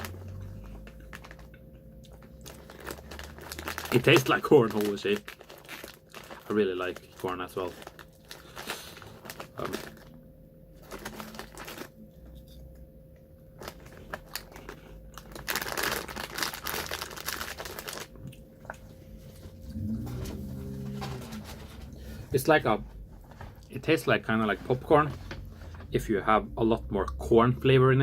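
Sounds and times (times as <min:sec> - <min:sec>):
crunching crispy snack: 0:00.0 - 0:10.2, 0:10.8 - 0:12.0, 0:13.6 - 0:22.5.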